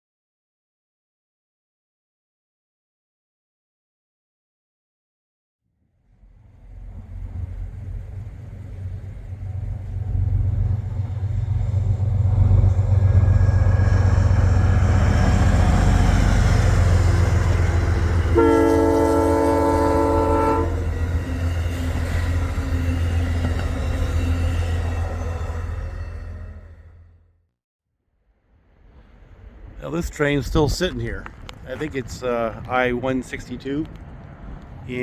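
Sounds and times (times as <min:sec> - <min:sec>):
model train wheels and motors rumbling: 0:06.0 - 0:27.2
train horn chord: 0:11.8 - 0:23.8.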